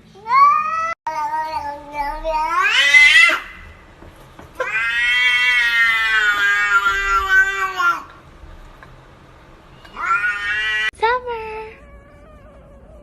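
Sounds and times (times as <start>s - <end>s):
cat meowing: 0.2s - 3.8s, 4.6s - 8.2s, 9.7s - 10.9s.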